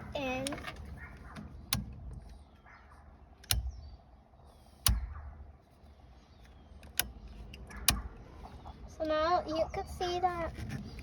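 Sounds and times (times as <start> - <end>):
sharp clicks of turn signal lever: 0.3 - 2.4, 3.4 - 3.9, 4.8 - 5.2, 6.4 - 8.2.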